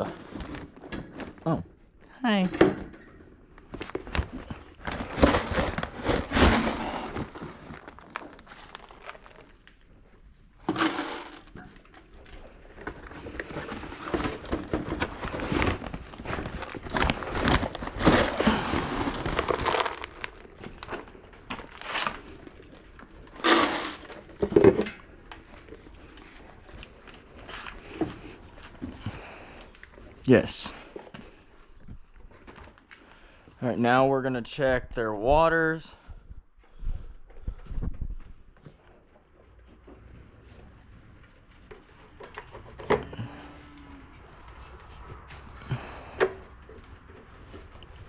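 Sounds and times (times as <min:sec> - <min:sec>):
rustling and crinkling handling noise: 0:00.0 - 0:02.0, 0:02.9 - 0:33.6, 0:35.4 - 0:48.0.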